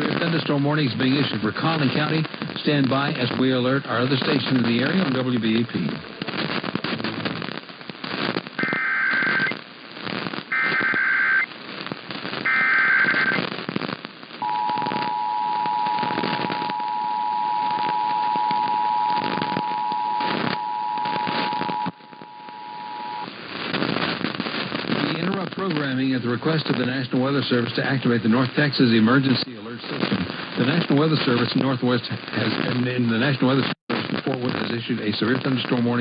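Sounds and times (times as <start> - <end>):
crackling radio static: 0.0 - 36.0
digital data bursts: 8.6 - 9.6, 12.4 - 13.5.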